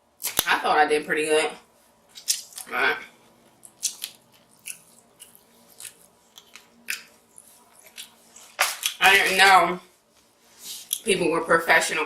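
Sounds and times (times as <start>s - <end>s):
crab legs cracking: 2.2s - 2.7s, 3.6s - 7.2s.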